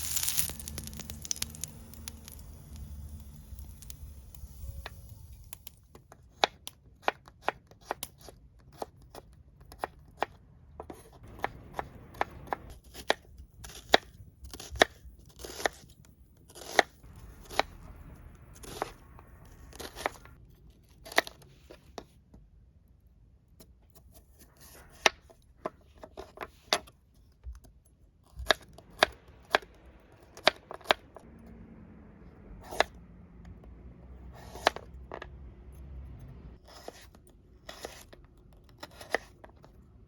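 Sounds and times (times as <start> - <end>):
frying sizzle: 0.0 - 5.7.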